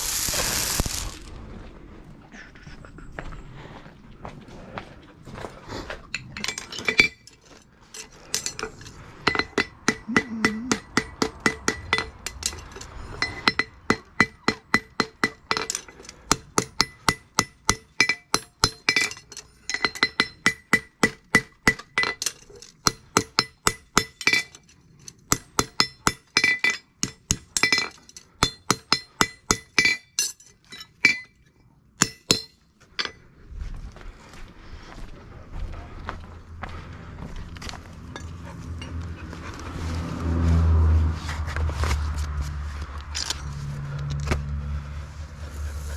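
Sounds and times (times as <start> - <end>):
hammer striking horseshoe on anvil: 9.2 - 24.6, 25.3 - 31.4, 32.0 - 33.2.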